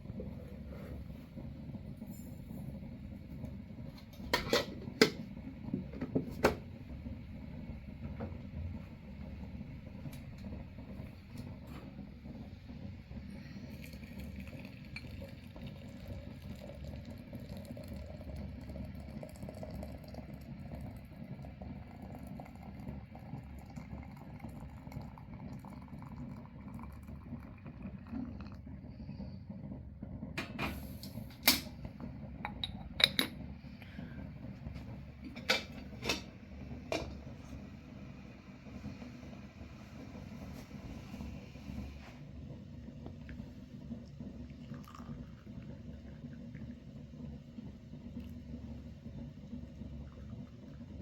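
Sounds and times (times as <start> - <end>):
dishes clinking: 32.5 - 33.4, 35.3 - 36.3.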